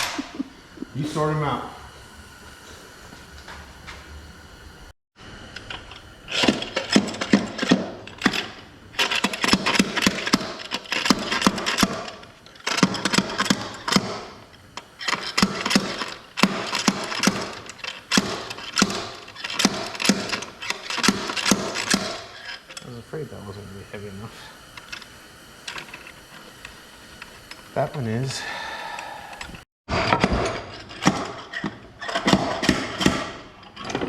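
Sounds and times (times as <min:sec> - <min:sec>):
hand tools clicking and knocking: 0:06.3 - 0:22.9.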